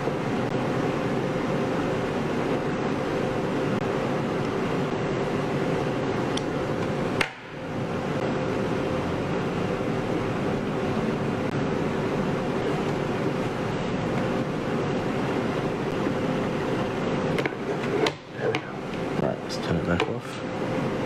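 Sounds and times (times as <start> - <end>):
constant low hum: 0.0 - 21.0
steady background hiss: 0.0 - 21.0.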